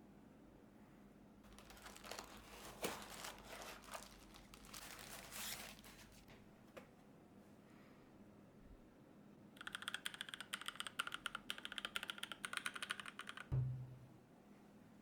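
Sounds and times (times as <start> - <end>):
mechanical keyboard typing: 9.6 - 13.5
low thump: 13.5 - 14.1.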